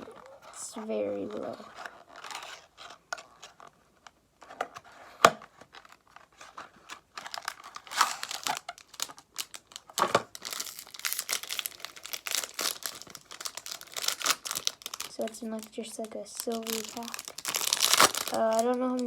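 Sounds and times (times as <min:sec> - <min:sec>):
foil wrapper tearing and crinkling: 0:05.7 - 0:19.0.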